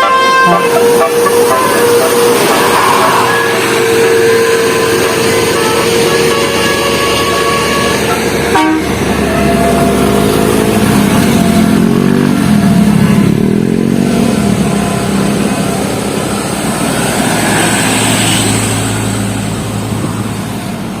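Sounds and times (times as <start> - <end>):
horn tones: 0.0 - 10.0
bus engine passing: 0.0 - 21.0.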